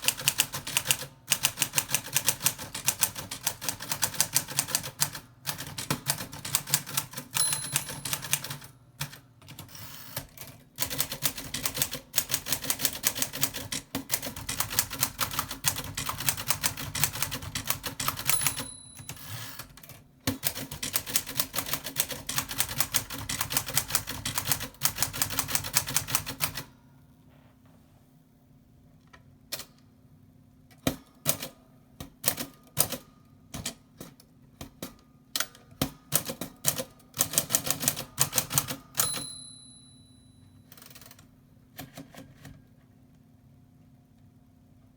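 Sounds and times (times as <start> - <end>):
typewriter keystrokes: 0.0 - 26.7, 30.8 - 39.3
typewriter bell ding: 7.4 - 8.7, 18.0 - 19.7, 39.0 - 41.1.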